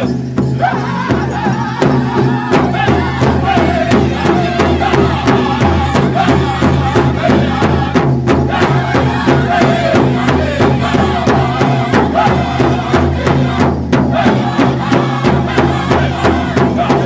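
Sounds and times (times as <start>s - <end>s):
drumbeat: 0.0s - 17.0s
voices singing together: 0.0s - 17.0s.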